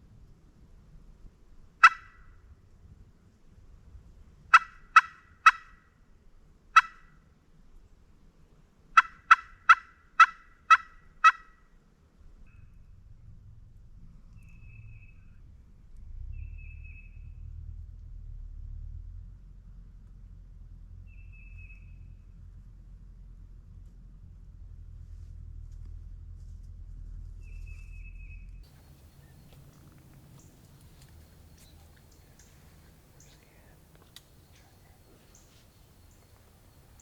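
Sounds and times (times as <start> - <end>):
turkey yelping: 1.8 - 2.2, 4.5 - 5.8, 6.8 - 7.1, 9.0 - 11.6, 28.7 - 33.4
faint low rumble: 11.8 - 37.0.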